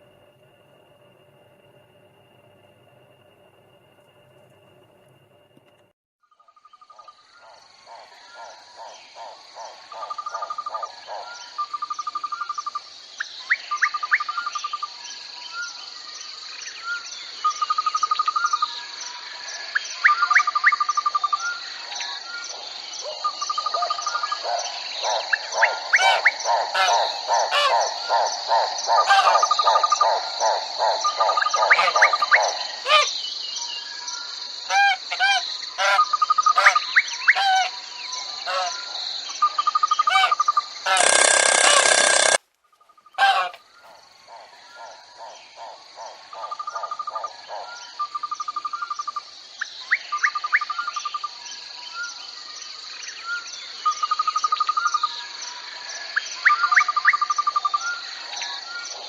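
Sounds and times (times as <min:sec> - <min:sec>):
crickets chirping: 0:00.0 - 0:59.0
lower trilled call: 0:25.9 - 0:28.2, 0:31.1 - 0:33.1, 0:40.0 - 0:42.4
quick rising calls: 0:40.1 - 0:42.4.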